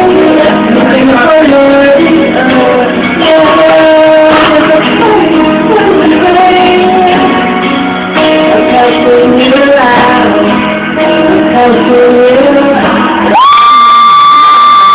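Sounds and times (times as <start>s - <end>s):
woman singing: 0.0s - 13.4s
guitar: 0.0s - 14.9s.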